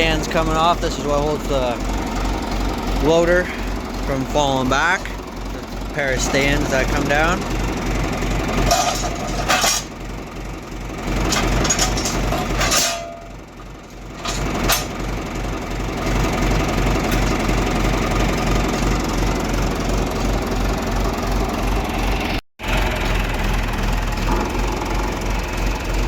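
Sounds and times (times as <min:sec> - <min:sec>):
diesel engine idling: 0:00.0 - 0:26.0
sharp metal clanks: 0:08.6 - 0:10.0, 0:11.3 - 0:13.5, 0:14.2 - 0:15.0.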